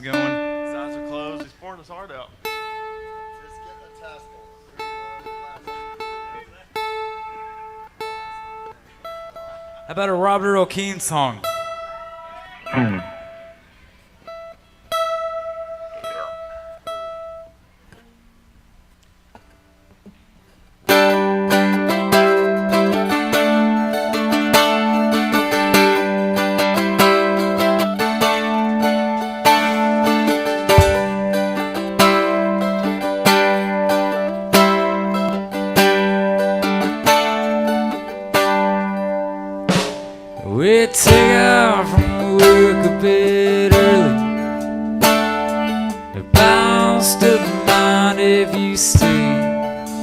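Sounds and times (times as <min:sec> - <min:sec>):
guitar notes plucked: 0:00.0 - 0:01.5, 0:02.4 - 0:09.9, 0:11.4 - 0:13.5, 0:14.2 - 0:18.3, 0:20.9 - 0:50.0
strummed guitar chord: 0:20.9 - 0:50.0
steady held low note: 0:29.4 - 0:32.0, 0:40.6 - 0:44.7.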